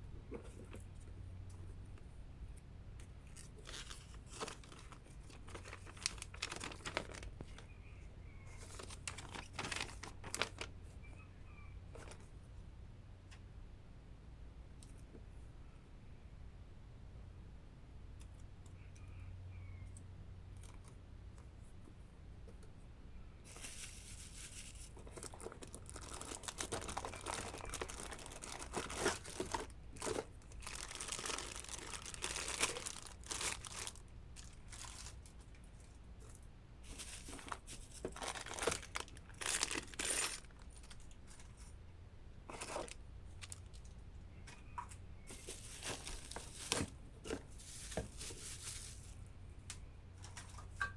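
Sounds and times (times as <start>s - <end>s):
packaging handling ticks: 3.4s - 7.7s, 8.7s - 10.7s, 23.6s - 35.4s, 36.9s - 41.0s, 45.3s - 49.1s
wrapping crinkling and tearing: 3.4s - 7.7s, 8.6s - 10.8s, 23.5s - 35.4s, 36.8s - 41.1s, 45.3s - 49.2s.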